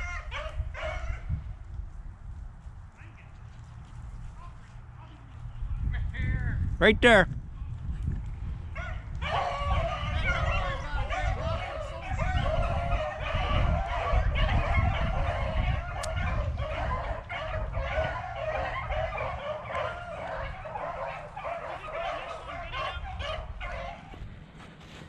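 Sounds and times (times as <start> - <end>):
beagles baying: 0.0 - 1.3, 8.7 - 24.3.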